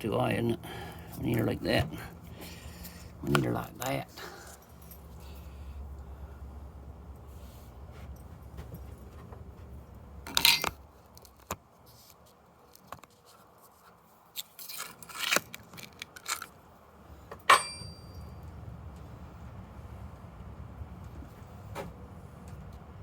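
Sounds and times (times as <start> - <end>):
metal tools clinking and rattling: 10.3 - 11.2, 17.4 - 18.4
short metallic ring: 17.4 - 18.4.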